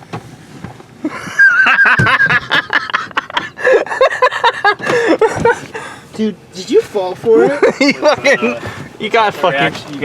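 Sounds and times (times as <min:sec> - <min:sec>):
young men laughing: 0:01.0 - 0:06.1, 0:07.3 - 0:08.9
high-pitched squealing laugh: 0:01.1 - 0:05.6.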